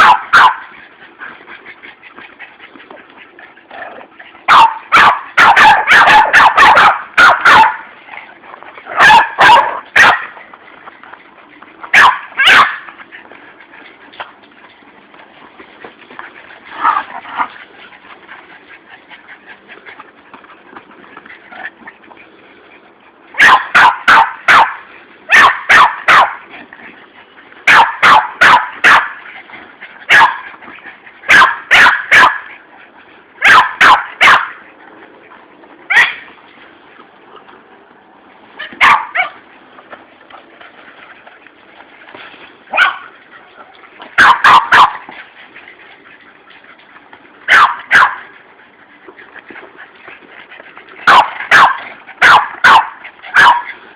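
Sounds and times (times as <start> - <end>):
dog barking: 0.0 - 0.7, 4.5 - 7.8, 9.0 - 10.3, 11.9 - 12.9, 23.4 - 26.4, 27.7 - 29.2, 30.1 - 30.4, 31.3 - 32.5, 33.4 - 34.6, 35.9 - 36.2, 38.8 - 39.4, 42.7 - 43.1, 44.2 - 45.0, 47.5 - 48.3, 51.1 - 53.7
dog yipping softly: 35.9 - 36.2, 38.6 - 39.4.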